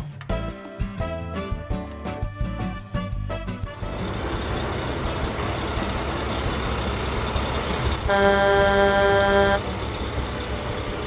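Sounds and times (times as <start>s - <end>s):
truck engine running: 3.6s - 11.0s
truck horn honk: 8.0s - 9.9s.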